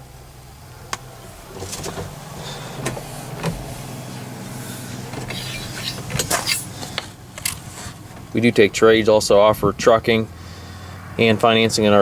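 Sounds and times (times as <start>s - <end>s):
tractor diesel engine idling: 0.0s - 12.0s
sharp clicks and knocks: 1.6s - 3.9s, 5.0s - 8.4s.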